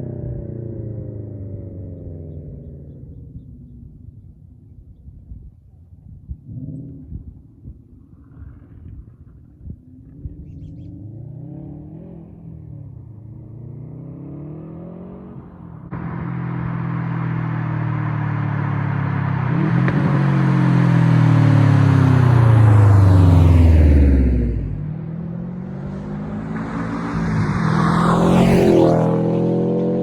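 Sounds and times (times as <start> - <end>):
car engine revving approaching: 6.3 - 30.0.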